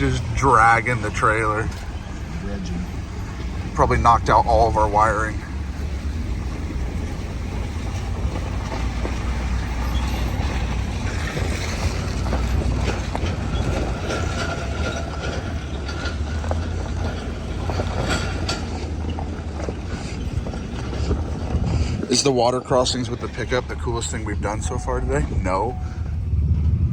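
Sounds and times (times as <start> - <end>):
thin steady squeal: 0.0 - 26.3
low engine drone: 0.0 - 26.9
trailer rattling and clanking: 0.0 - 26.9.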